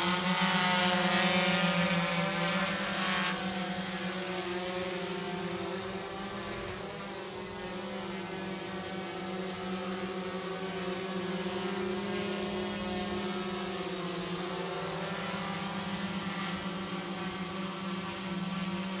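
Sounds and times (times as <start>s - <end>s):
drone propellers humming: 0.0s - 19.0s.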